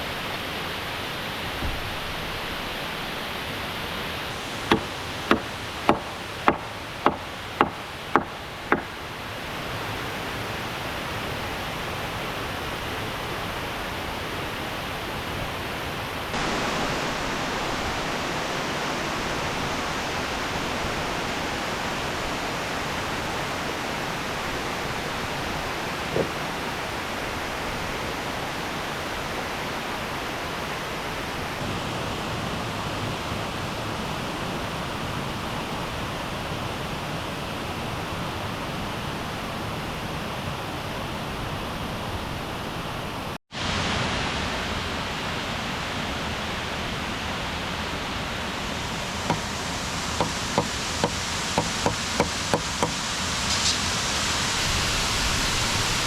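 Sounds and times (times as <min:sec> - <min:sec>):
waterfall rushing: 0:00.0 - 0:56.0
sharp knocks: 0:04.7 - 0:09.0, 0:49.3 - 0:49.6, 0:50.2 - 0:53.0.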